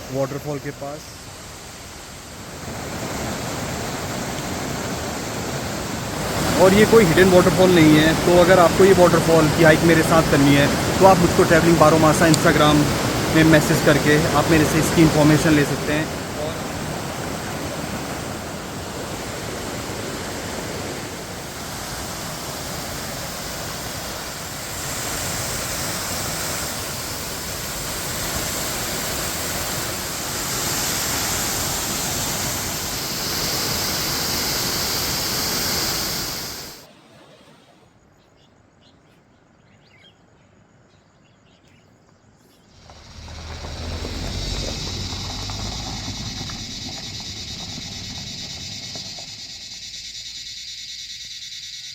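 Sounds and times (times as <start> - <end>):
waterfall rushing: 0.0 - 36.9, 42.8 - 49.6
faint high ticks: 12.3 - 12.5.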